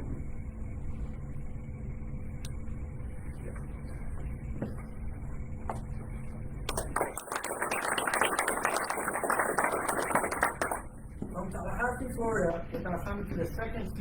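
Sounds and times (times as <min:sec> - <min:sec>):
low room rumble: 0:00.0 - 0:14.0
audience applause: 0:06.7 - 0:10.8.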